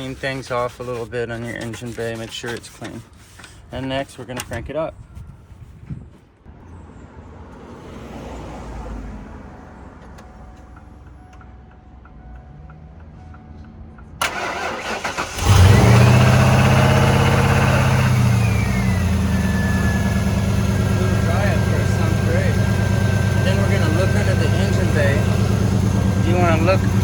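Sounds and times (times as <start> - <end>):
engine running: 14.2 - 27.0
engine starter cranking: 14.2 - 27.0.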